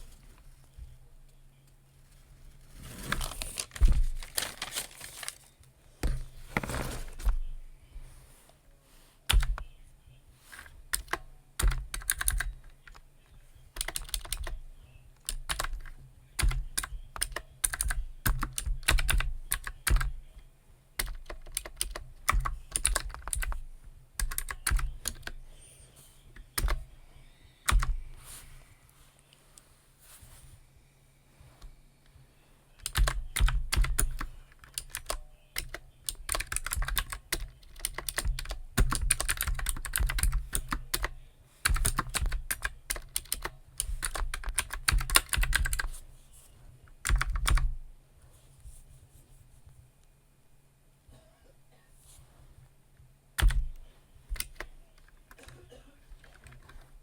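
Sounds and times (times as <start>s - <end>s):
typing on computer keyboard: 9.3s - 9.6s, 10.9s - 13.0s, 13.8s - 14.6s, 15.2s - 20.2s, 21.0s - 23.6s, 24.2s - 25.4s, 32.8s - 45.9s, 47.0s - 47.7s, 53.4s - 55.6s.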